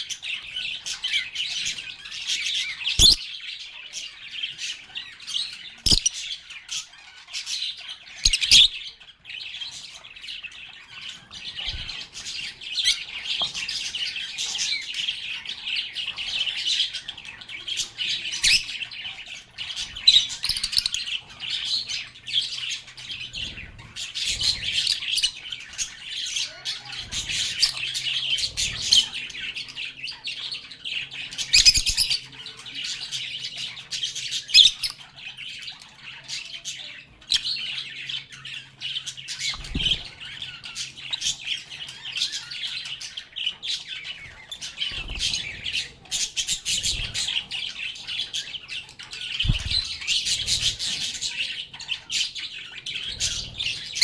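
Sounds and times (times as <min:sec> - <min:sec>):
lovebirds chattering and chirping: 0:00.0 - 0:54.0
shrill bird squawks: 0:02.9 - 0:03.3.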